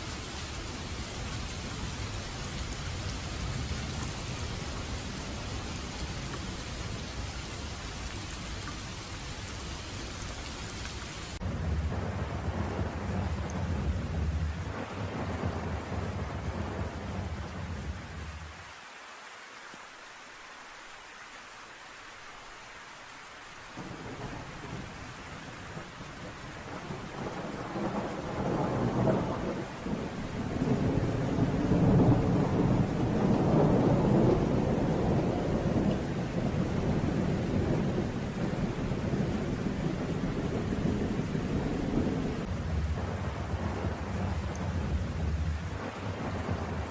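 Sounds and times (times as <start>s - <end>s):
steady rain: 0.0s - 46.9s
rolling thunder: 11.4s - 18.6s, 23.8s - 46.9s.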